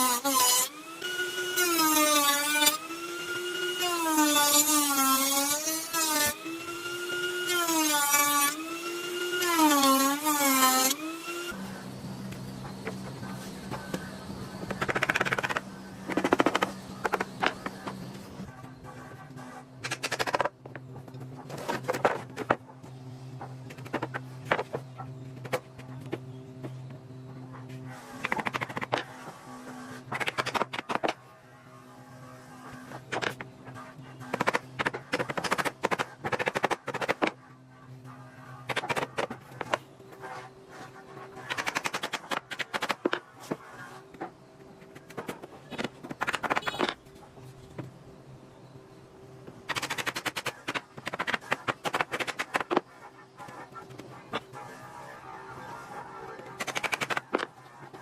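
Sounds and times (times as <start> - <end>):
tools knocking and scraping on wood: 12.6 - 18.2, 19.1 - 22.8, 23.4 - 27.0, 28.2 - 29.1, 33.1 - 33.5, 38.7 - 40.4, 41.4 - 48.0.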